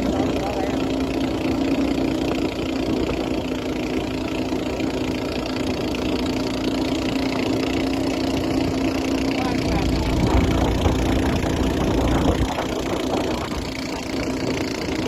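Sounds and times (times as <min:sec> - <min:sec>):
boat engine humming: 0:00.0 - 0:15.0
steady rushing noise: 0:06.8 - 0:15.0.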